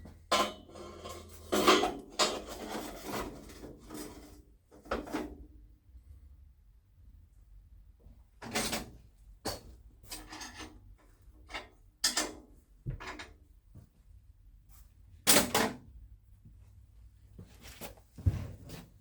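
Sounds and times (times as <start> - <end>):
parts scraping and sliding: 0.4 - 5.4.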